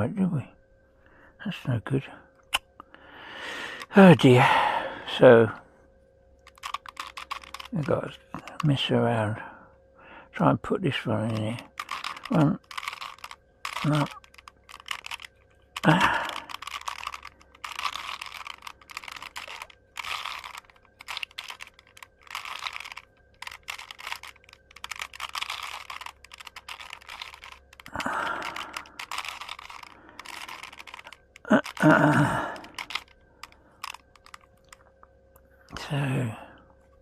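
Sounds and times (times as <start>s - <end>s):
plastic puzzle cube clicking: 6.5s - 8.8s, 11.3s - 34.9s.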